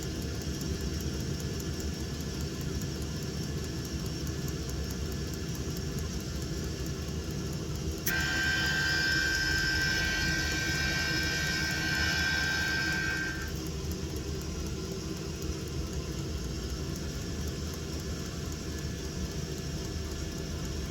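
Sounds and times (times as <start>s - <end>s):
air heater combustion rumble: 7.9s - 20.9s
high whine with hiss: 8.1s - 13.5s.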